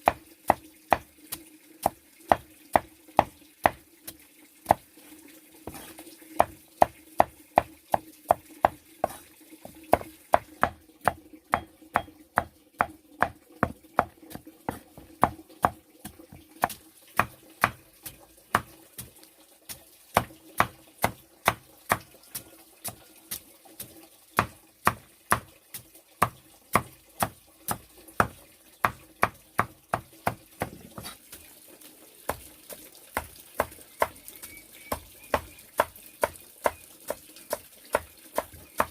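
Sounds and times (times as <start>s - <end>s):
knife chopping: 0.0s - 1.1s, 1.8s - 3.8s, 5.7s - 7.7s, 8.3s - 15.8s, 16.6s - 18.8s, 20.2s - 25.5s, 26.2s - 31.2s, 32.3s - 34.2s, 34.9s - 38.9s.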